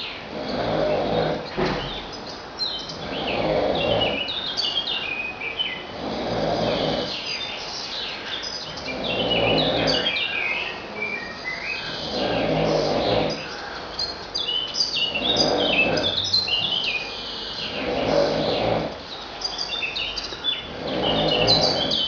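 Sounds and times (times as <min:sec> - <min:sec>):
birds chirping: 0:00.0 - 0:22.0
person snoring: 0:05.9 - 0:07.1, 0:08.8 - 0:10.2, 0:11.9 - 0:13.4, 0:15.1 - 0:16.7, 0:17.6 - 0:19.0, 0:20.7 - 0:22.0.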